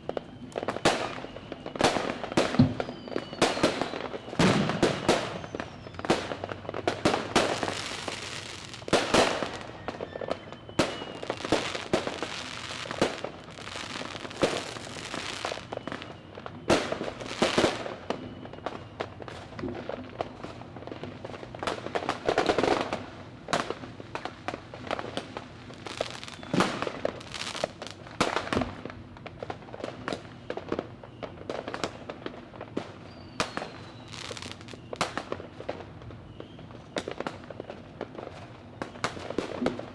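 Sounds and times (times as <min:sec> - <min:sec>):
falling firework whistles: 0:00.0 - 0:19.6, 0:24.8 - 0:28.9, 0:32.8 - 0:37.3
firework bangs and crackling: 0:00.0 - 0:39.9.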